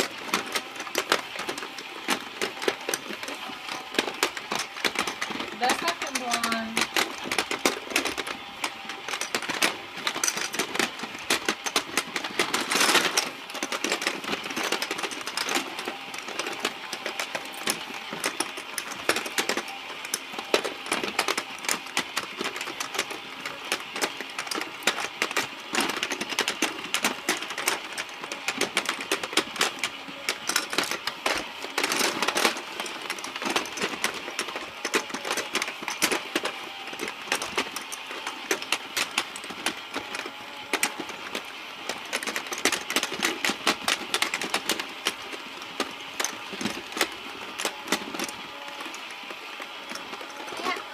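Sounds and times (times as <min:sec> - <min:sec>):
toy gears clicking and rattling: 0:00.0 - 0:50.9.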